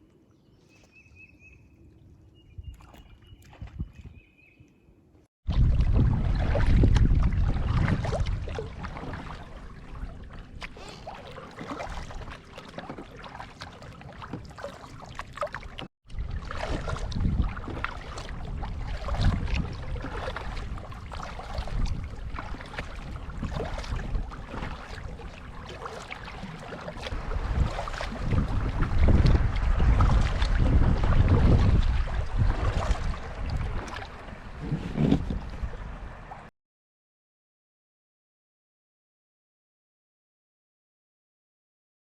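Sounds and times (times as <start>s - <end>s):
paddle strokes splashing: 2.6s - 4.3s, 5.5s - 36.5s.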